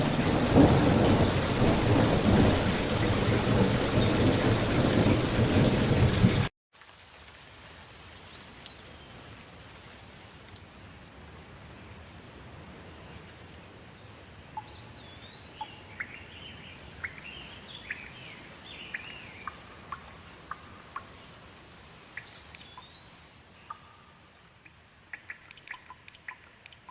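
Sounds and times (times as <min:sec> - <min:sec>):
thunder: 0:00.0 - 0:06.5
heavy rain: 0:00.0 - 0:11.4, 0:12.4 - 0:23.5
faint steady hiss: 0:06.8 - 0:26.9.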